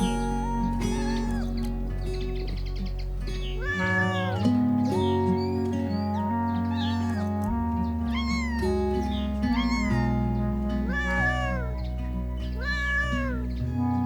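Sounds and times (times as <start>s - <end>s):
background music of sustained chords: 0.0s - 14.0s
cat meowing: 0.4s - 1.8s, 3.4s - 4.4s, 6.6s - 14.0s.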